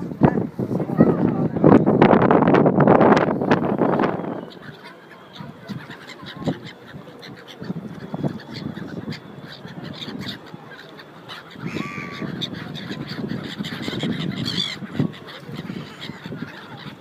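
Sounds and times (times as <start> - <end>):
waterfowl honking and calling: 4.5 - 17.0.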